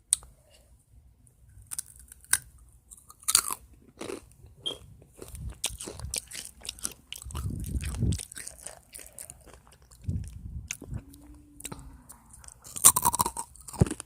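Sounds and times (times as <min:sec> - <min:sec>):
crisp snack crunching: 0:05.2 - 0:10.9, 0:12.4 - 0:14.0.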